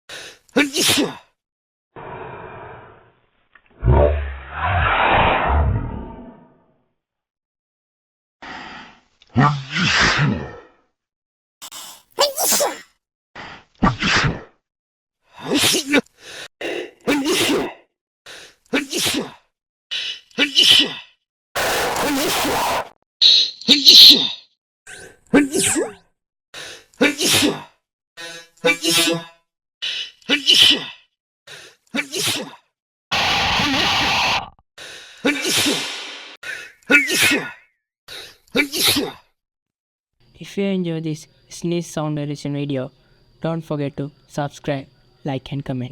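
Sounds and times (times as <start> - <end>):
person sneezing: 0.6 - 1.2, 11.6 - 12.9, 16.6 - 17.7, 18.8 - 19.4, 27.0 - 27.6, 35.3 - 35.9
burst of hissing noise: 21.6 - 24.4.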